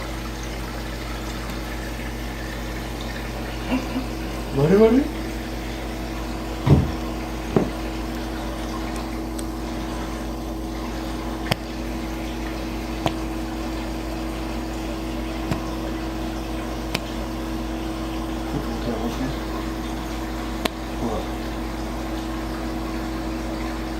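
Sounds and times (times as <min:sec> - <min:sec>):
aquarium pump humming: 0:00.0 - 0:23.9
thump: 0:06.6 - 0:07.8
sharp clicks and knocks: 0:15.5 - 0:15.8.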